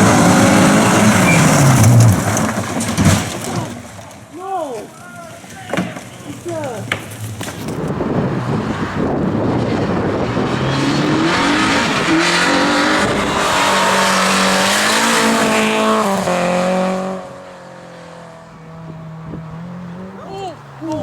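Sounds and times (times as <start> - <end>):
rally car engine revving: 0.0 - 4.0, 6.3 - 21.0.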